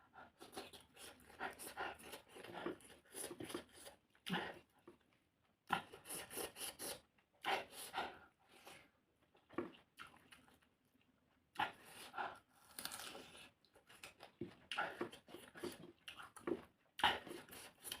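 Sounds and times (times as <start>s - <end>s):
wet chewing and mouth smacking: 8.7s - 18.0s.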